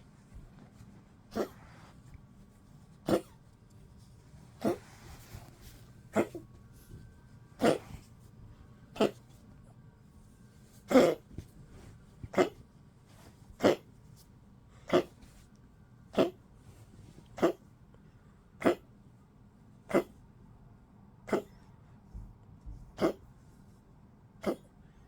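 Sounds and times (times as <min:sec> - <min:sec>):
dog coughing: 0:01.3 - 0:01.7, 0:03.0 - 0:03.4, 0:04.6 - 0:05.1, 0:06.1 - 0:06.5, 0:07.6 - 0:08.1, 0:09.0 - 0:09.2, 0:10.9 - 0:11.4, 0:12.3 - 0:12.6, 0:13.6 - 0:13.9, 0:14.8 - 0:15.2, 0:16.2 - 0:16.4, 0:17.4 - 0:17.6, 0:18.6 - 0:18.9, 0:19.9 - 0:20.2, 0:21.3 - 0:21.6, 0:23.0 - 0:23.3, 0:24.4 - 0:24.7.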